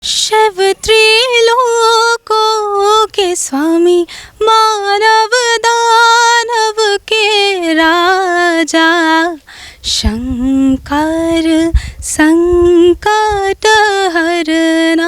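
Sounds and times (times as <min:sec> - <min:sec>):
singer breathing: 0:04.1 - 0:04.4, 0:09.4 - 0:09.9, 0:11.7 - 0:12.1.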